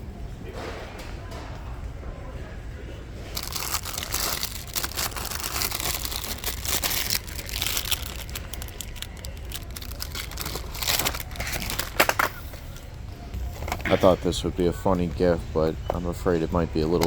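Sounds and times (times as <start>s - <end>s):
plastic packaging crinkling: 3.3s - 13.0s.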